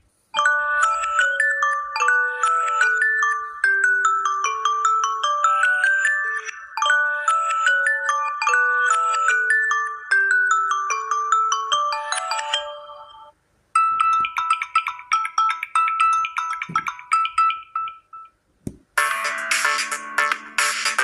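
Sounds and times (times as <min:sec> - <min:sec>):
phone ringtone melodies: 0:00.4 - 0:18.4, 0:19.0 - 0:21.0.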